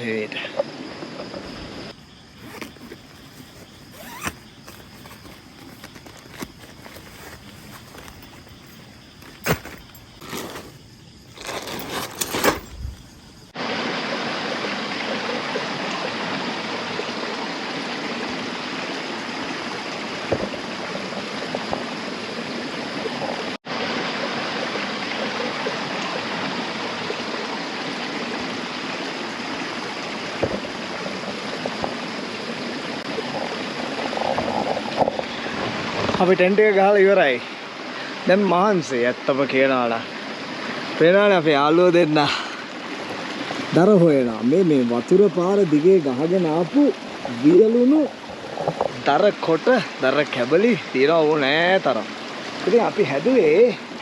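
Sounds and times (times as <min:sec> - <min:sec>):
stream rushing over rock: 0:13.6 - 0:20.9, 0:23.4 - 0:54.0.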